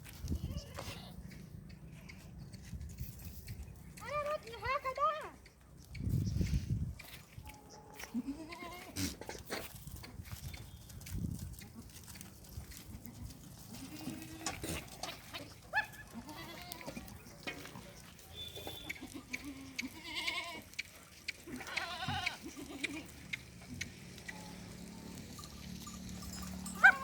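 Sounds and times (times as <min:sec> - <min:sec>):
goats bleating: 0:00.3 - 0:01.2, 0:08.1 - 0:09.3, 0:12.9 - 0:17.0, 0:18.7 - 0:20.8, 0:21.4 - 0:23.2.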